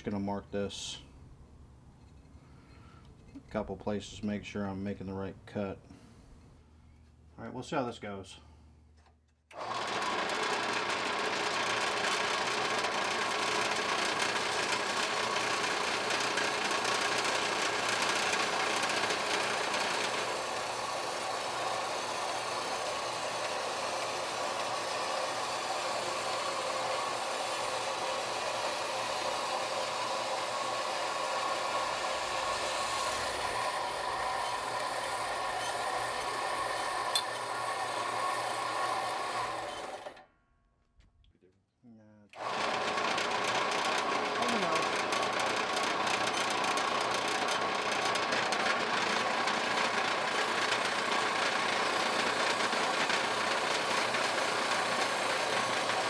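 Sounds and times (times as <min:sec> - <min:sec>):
power saw motor whine: 0:09.5 - 0:40.3, 0:42.4 - 0:56.0
high hiss of saw cutting brick: 0:09.6 - 0:40.2, 0:42.5 - 0:56.0.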